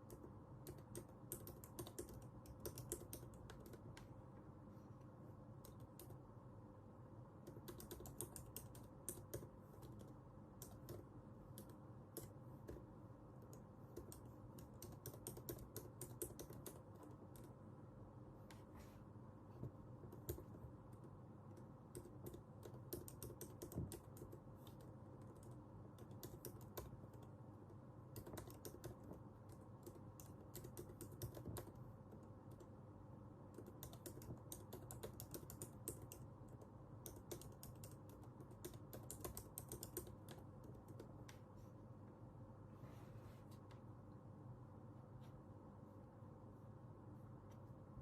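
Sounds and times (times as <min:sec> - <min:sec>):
computer keyboard typing: 0:00.0 - 0:04.1, 0:05.5 - 0:06.2, 0:07.4 - 0:17.6, 0:19.6 - 0:32.8, 0:33.5 - 0:41.4
faint steady hum: 0:00.0 - 0:48.0.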